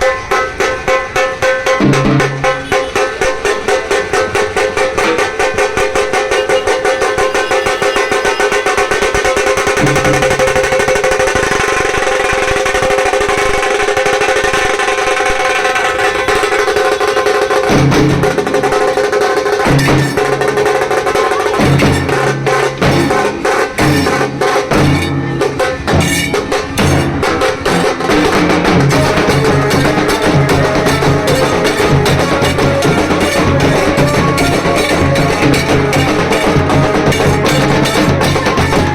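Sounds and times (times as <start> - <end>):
deep drum beats: 0.0 - 38.9
fast rattling drumming: 0.0 - 38.9
sustained banjo melody: 21.4 - 38.9.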